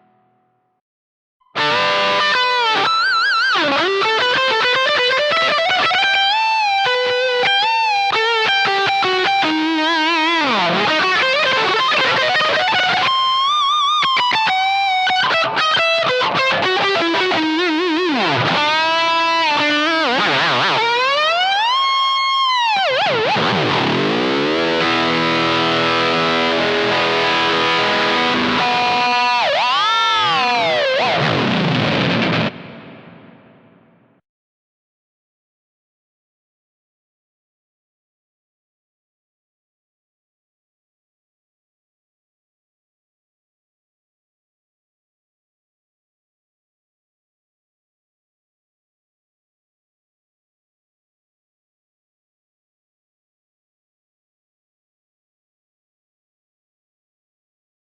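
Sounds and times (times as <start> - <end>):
distorted electric guitar lead: 0.0 - 0.7, 1.4 - 34.1.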